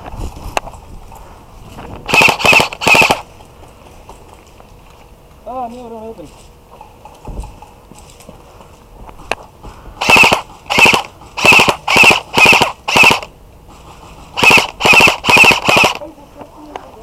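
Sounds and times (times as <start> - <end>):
airsoft rifle full-auto bursts: 2.1 - 3.3, 10.0 - 13.3, 14.4 - 16.0.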